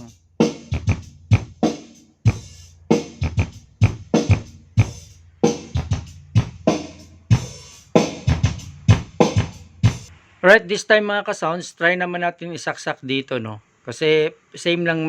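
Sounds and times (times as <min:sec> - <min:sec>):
drum beat music through speaker: 0:00.0 - 0:10.1.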